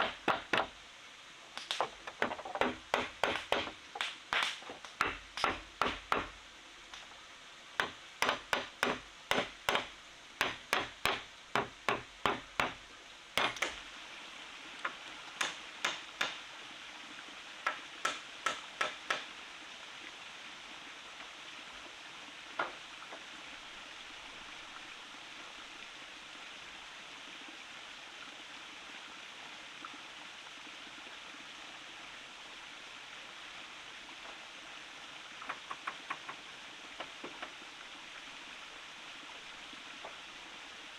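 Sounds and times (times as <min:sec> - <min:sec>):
tool striking wood: 0:00.0 - 0:00.7, 0:01.6 - 0:06.4, 0:07.8 - 0:12.8, 0:13.4 - 0:13.8, 0:15.4 - 0:16.4, 0:17.7 - 0:19.3
stream running: 0:00.0 - 0:40.9.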